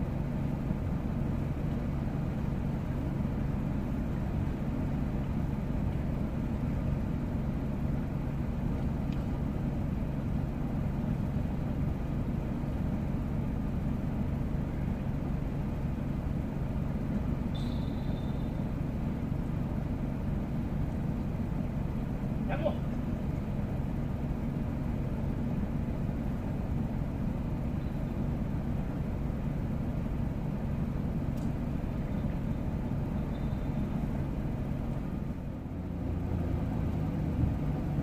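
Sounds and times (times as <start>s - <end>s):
low engine-like hum: 0.0s - 38.0s
high-pitched ring: 17.6s - 18.6s.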